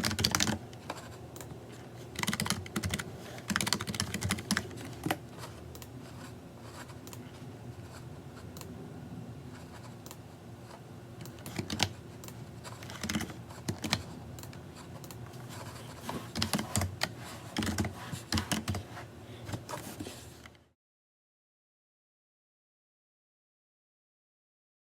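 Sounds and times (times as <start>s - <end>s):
keyboard typing: 0.0s - 1.5s, 2.1s - 5.9s, 11.2s - 15.2s, 16.3s - 18.9s
steady low hum: 0.0s - 20.7s.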